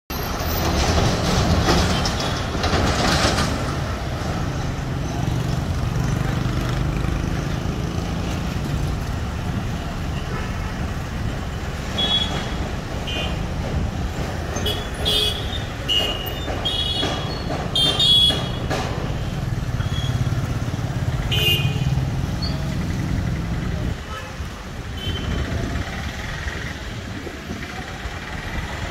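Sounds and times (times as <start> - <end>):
traffic engines running: 0.1 - 28.9
vehicle horns honking: 12.0 - 13.4, 14.6 - 18.7, 21.3 - 22.0, 24.0 - 25.5.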